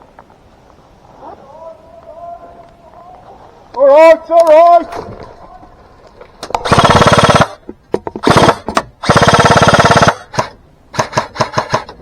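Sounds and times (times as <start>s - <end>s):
airsoft gun automatic bursts: 6.6s - 7.6s, 8.2s - 12.0s.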